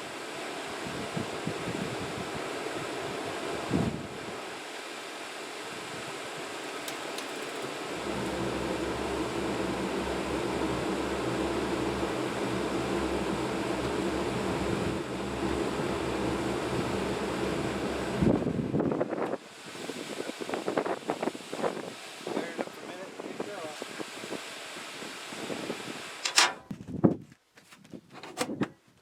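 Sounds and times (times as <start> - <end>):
furnace fan blowing: 0.0 - 26.8
deep steady hum: 7.5 - 20.0.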